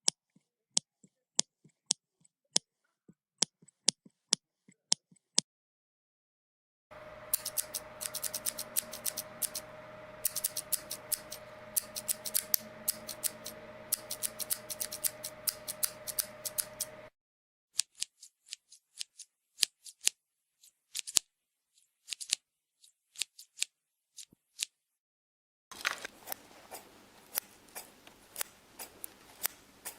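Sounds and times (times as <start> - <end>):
steady hum: 6.9 - 17.1
scissors snipping: 7.3 - 17.0, 25.8 - 29.9.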